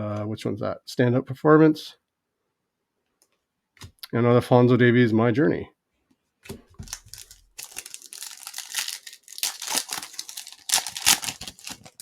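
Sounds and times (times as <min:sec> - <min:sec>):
card pack wrapper crinkling and tearing: 0:06.8 - 0:12.0.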